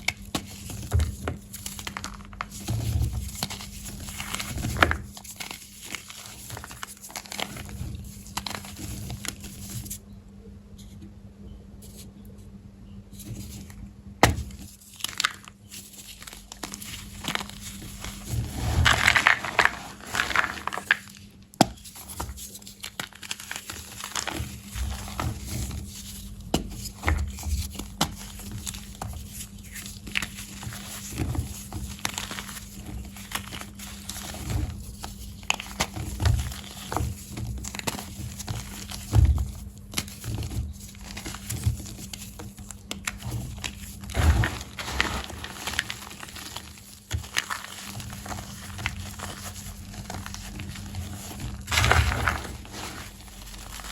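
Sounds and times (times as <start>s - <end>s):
chalk crunching and crumbling: 14.4s - 53.9s.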